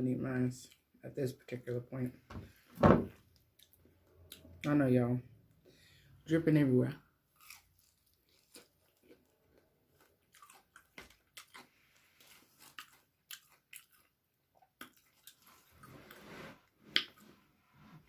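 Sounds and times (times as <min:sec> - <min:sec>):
soft breathing: 0:05.6 - 0:06.2
chewing with wet mouth clicks: 0:07.4 - 0:11.7, 0:12.6 - 0:15.6.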